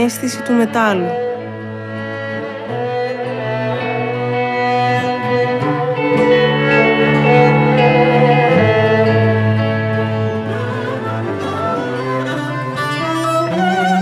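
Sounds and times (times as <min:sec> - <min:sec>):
slow bowed string music: 0:00.0 - 0:14.0.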